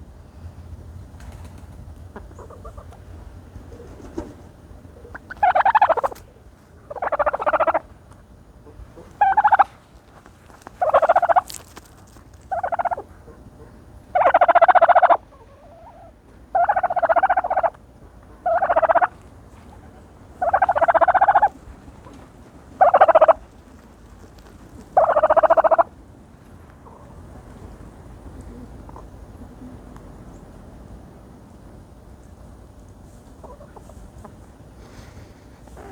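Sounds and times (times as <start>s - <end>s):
turkey calling: 2.2s - 3.0s, 4.9s - 7.9s, 8.6s - 9.8s, 10.8s - 11.6s, 12.5s - 23.5s, 24.8s - 25.9s, 33.4s - 34.4s.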